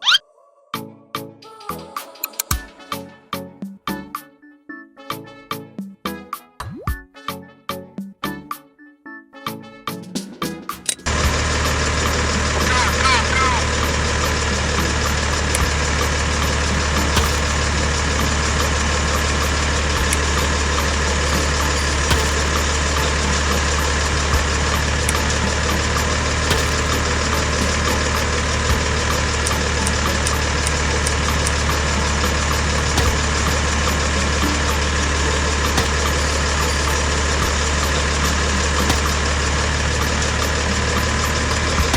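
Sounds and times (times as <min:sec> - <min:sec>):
engine idling drone: 0:11.1 - 0:41.9.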